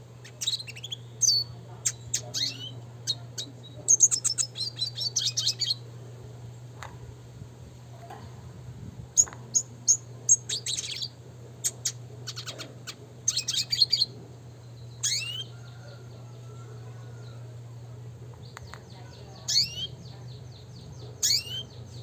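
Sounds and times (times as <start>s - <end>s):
steady low hum: 0.0s - 22.0s
bird chirping and trilling: 0.2s - 5.9s, 9.2s - 16.6s, 18.4s - 22.0s.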